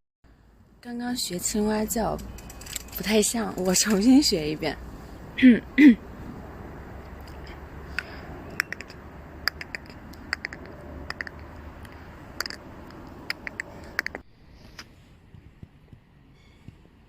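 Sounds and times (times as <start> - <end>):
mouth clicks imitating frog: 7.3 - 14.2.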